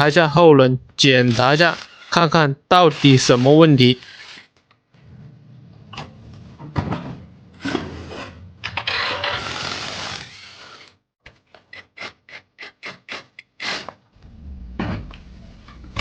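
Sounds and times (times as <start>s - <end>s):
hand tools scraping and rubbing: 1.0s - 4.6s, 5.3s - 10.9s, 11.7s - 16.0s.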